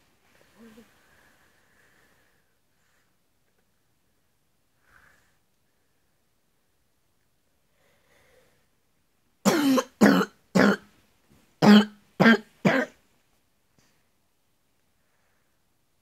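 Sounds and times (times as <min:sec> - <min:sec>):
man coughing: 0:09.5 - 0:10.8.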